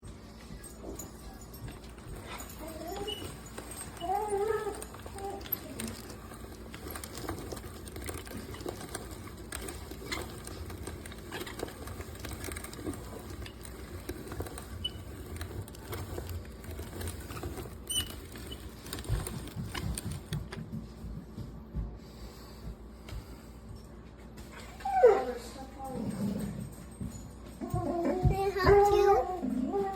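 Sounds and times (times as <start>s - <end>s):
hand grain mill grinding: 0.0s - 21.2s.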